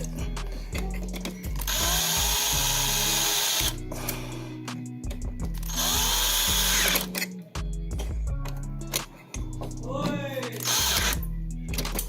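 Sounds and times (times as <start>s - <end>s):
power drill whining: 0.0s - 4.5s, 5.6s - 7.4s, 10.6s - 11.2s
quiet background music: 0.0s - 12.0s.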